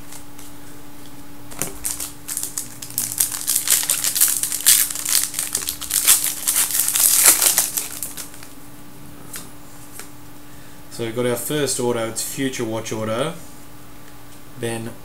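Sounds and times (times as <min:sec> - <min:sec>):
card pack wrapper crinkling: 0:01.5 - 0:08.6.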